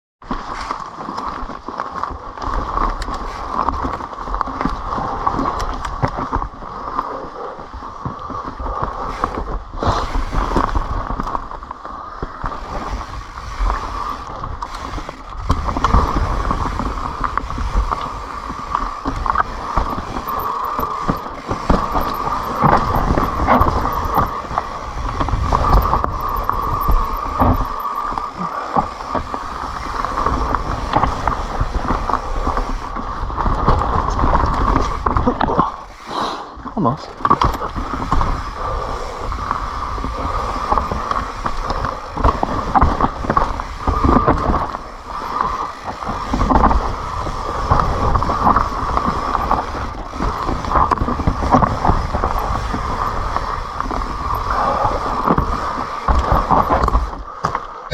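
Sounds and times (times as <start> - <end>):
bike chain and frame rattling: 14.8 - 32.8, 37.1 - 38.6, 42.4 - 57.1
steady buzz: 19.6 - 28.7.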